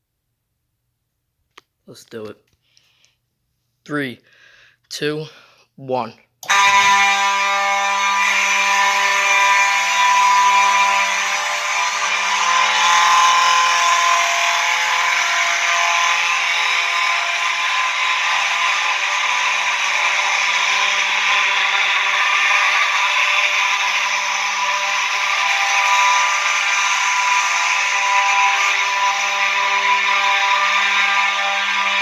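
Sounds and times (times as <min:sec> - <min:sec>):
fire alarm horns blaring: 0:06.4 - 0:32.0.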